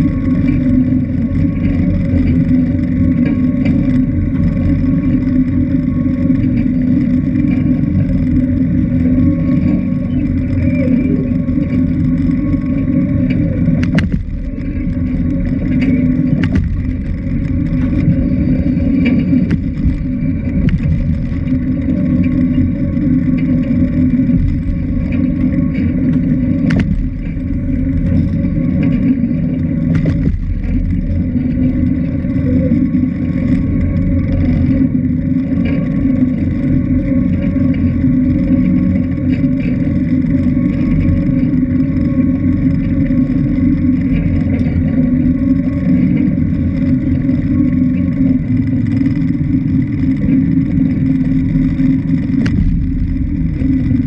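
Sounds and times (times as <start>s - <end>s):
motorboat engine droning: 0.0s - 54.0s.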